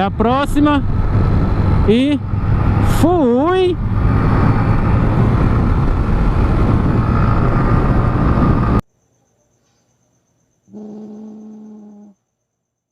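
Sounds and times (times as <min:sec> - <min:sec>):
motorcycle engine: 0:00.0 - 0:08.8
wind rushing over microphone: 0:00.0 - 0:08.8.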